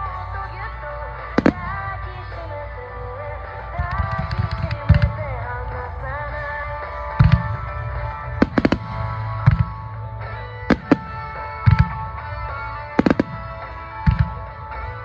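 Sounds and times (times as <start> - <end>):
music with long held tones: 0.0 - 15.0
fireworks cracking and booming: 1.2 - 2.4, 3.7 - 5.4, 6.9 - 15.0.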